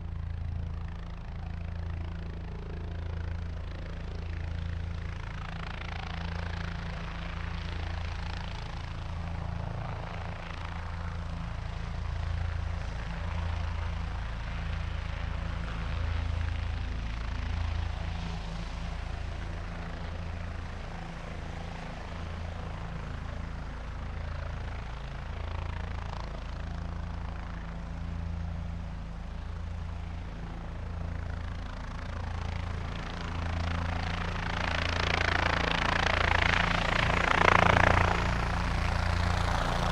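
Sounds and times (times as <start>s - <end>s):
helicopter rotor beating: 0.0s - 39.9s.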